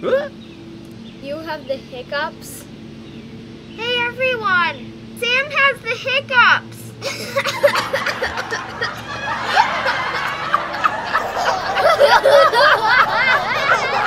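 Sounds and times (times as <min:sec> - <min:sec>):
people laughing: 0:07.0 - 0:14.0.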